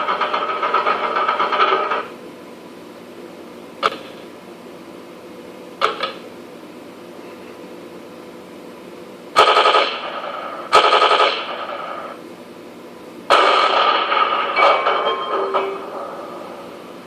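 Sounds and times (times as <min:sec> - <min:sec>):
machine-gun sound effect bursts: 0:00.0 - 0:02.1, 0:09.4 - 0:12.2, 0:13.3 - 0:16.2.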